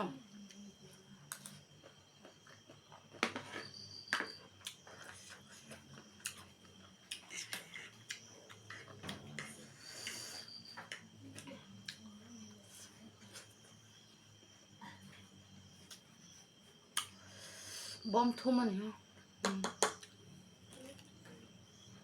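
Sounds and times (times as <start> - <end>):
chewing and mouth clicks: 4.6 - 9.5.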